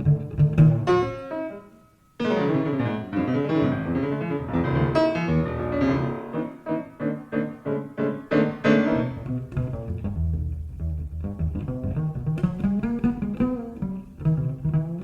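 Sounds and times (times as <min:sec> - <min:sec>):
double bass: 0:00.0 - 0:01.1, 0:02.6 - 0:06.1, 0:08.7 - 0:15.0
jazz piano: 0:00.0 - 0:15.0.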